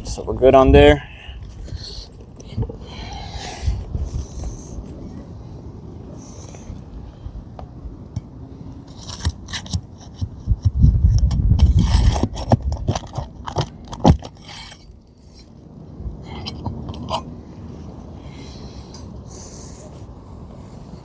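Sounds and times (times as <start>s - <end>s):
low rumbling handling noise: 0.0s - 21.0s
pry bar scraping shingles: 8.8s - 15.6s.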